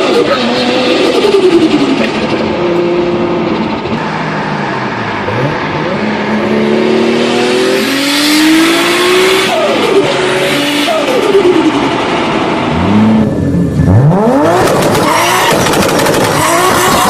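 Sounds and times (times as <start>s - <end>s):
turbocharged car engine accelerating: 0.0s - 17.0s.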